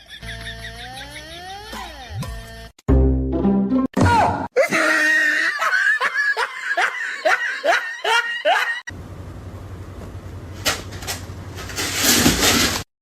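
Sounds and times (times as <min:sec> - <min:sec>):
person laughing: 0:00.0 - 0:02.7, 0:04.6 - 0:08.9.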